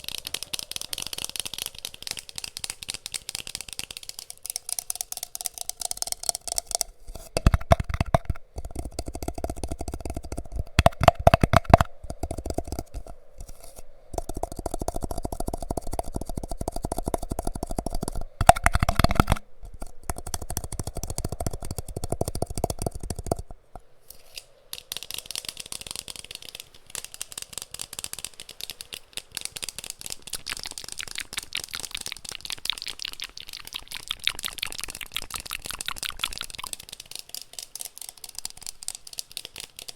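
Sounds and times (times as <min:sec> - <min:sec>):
finger tapping on objects: 0:00.0 - 0:23.9.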